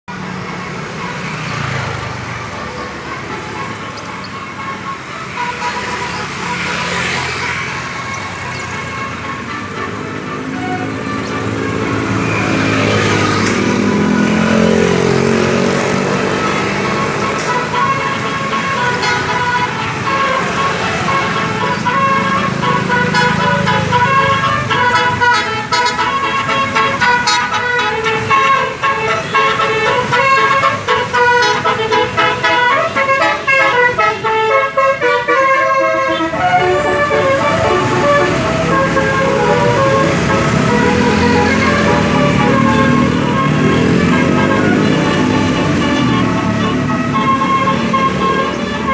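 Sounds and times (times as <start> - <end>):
bus engine running: 0.1 - 48.9
bus horn: 2.7 - 48.9.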